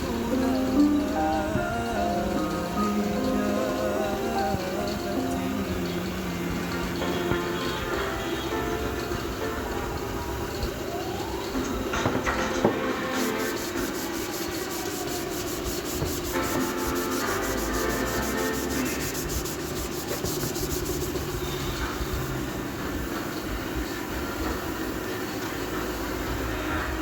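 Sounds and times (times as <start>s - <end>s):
steady hum: 0.0s - 23.8s
sanding wood: 13.0s - 22.0s.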